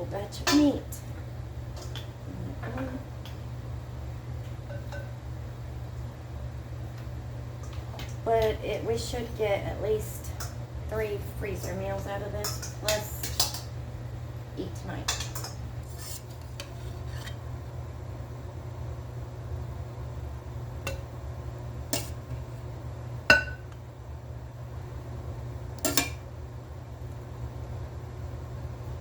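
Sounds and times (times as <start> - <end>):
steady low hum: 0.0 - 29.0
metal utensil clinking on dish: 25.9 - 26.2.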